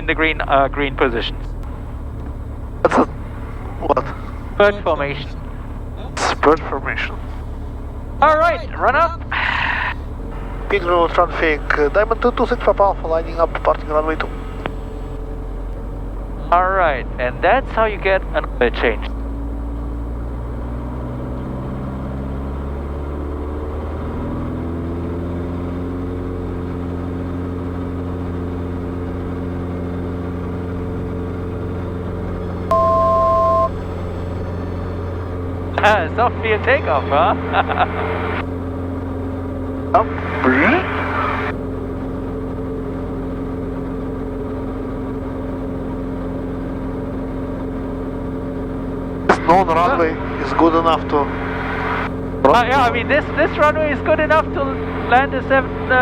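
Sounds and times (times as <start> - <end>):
light aircraft engine and propeller: 0.0 - 56.0.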